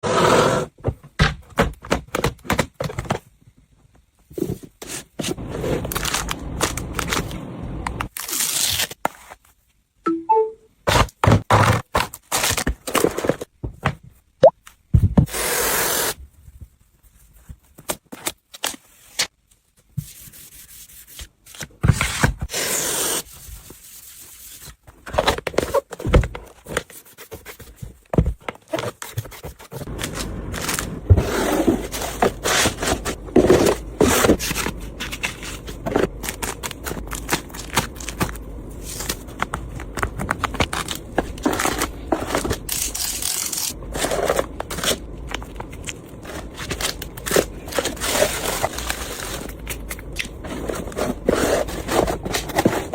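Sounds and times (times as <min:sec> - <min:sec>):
cardboard and plastic handled: 0:00.8 - 0:03.4, 0:24.5 - 0:52.9.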